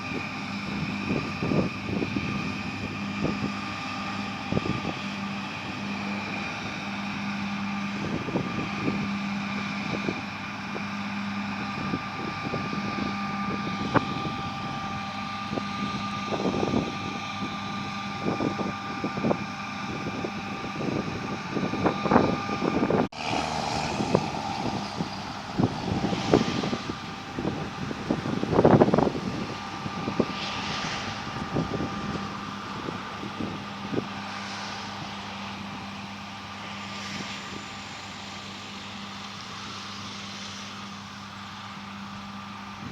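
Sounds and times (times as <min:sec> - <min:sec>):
diesel engine running under load: 0:00.0 - 0:42.9.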